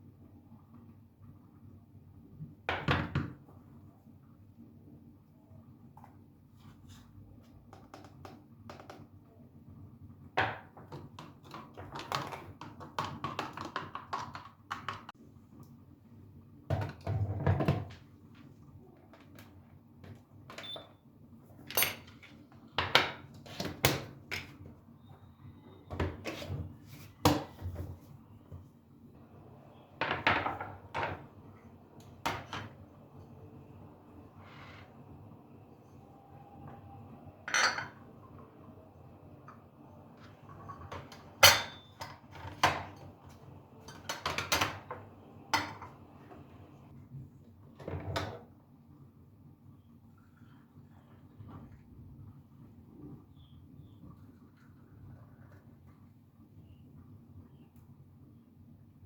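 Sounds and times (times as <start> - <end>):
dishes clattering: 37.5 - 38.0, 40.7 - 43.0.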